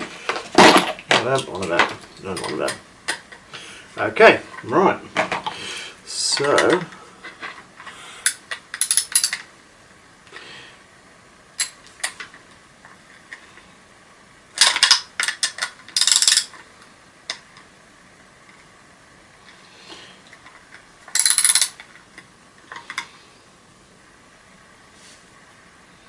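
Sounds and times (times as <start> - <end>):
metal screwdriver clicks and clatter: 6.4 - 7.6, 8.2 - 9.5, 14.6 - 16.6, 21.1 - 21.8.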